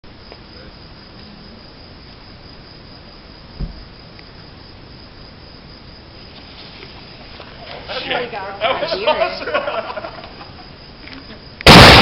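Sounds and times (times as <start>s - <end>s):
high insect trill: 0.0s - 12.0s
dull low thump: 3.6s - 3.9s.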